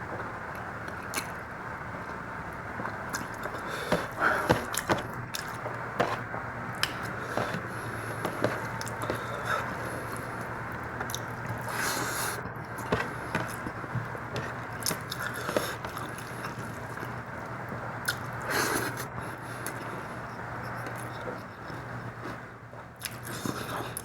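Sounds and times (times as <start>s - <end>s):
chewing and wet mouth sounds: 3.1s - 11.8s, 18.0s - 18.3s, 23.0s - 24.0s.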